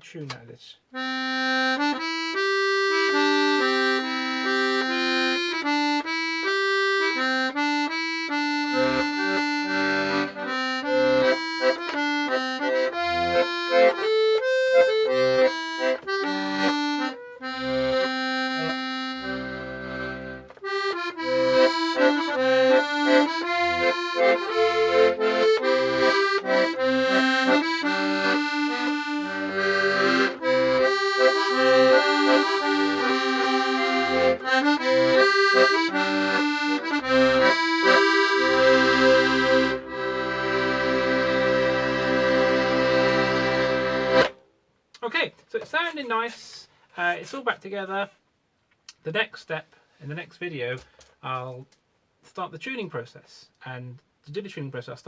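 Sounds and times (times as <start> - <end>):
accordion playing a tune: 0.9 - 44.4.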